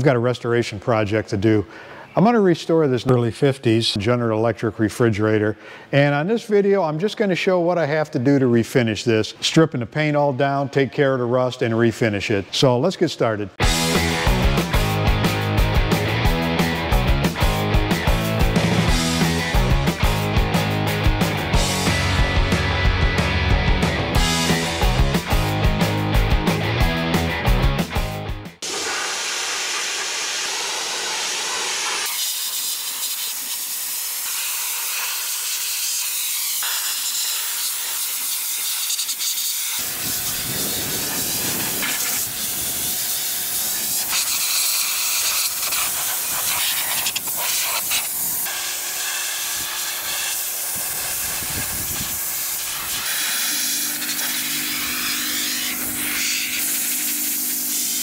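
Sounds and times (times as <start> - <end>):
compressed air tool hissing: 28.6 - 58.0.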